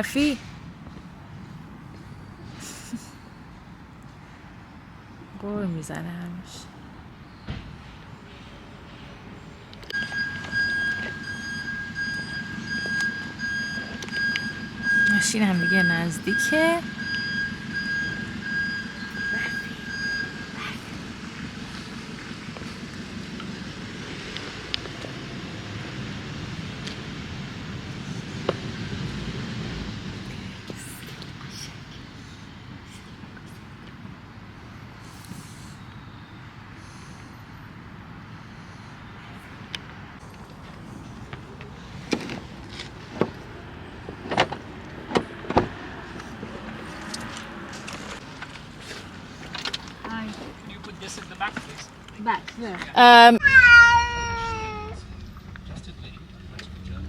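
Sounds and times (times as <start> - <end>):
street traffic noise: 0.0 - 57.0
car idling: 10.0 - 28.4, 53.6 - 57.0.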